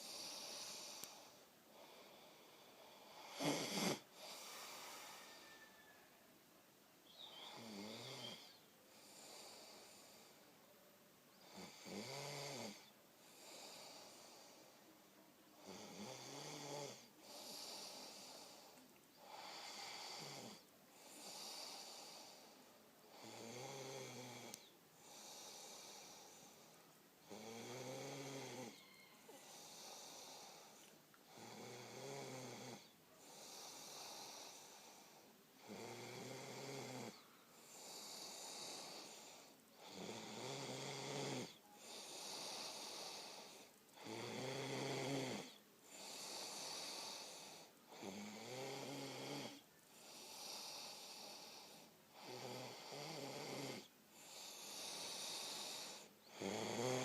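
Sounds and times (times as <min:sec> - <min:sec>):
person snoring: 0:00.0 - 0:06.1, 0:07.1 - 0:10.4, 0:11.4 - 0:14.7, 0:15.6 - 0:57.0
breathy hiss of air: 0:00.0 - 0:06.2, 0:07.1 - 0:10.6, 0:17.0 - 0:23.4, 0:24.4 - 0:27.0, 0:28.8 - 0:31.6, 0:32.8 - 0:44.7, 0:45.4 - 0:57.0.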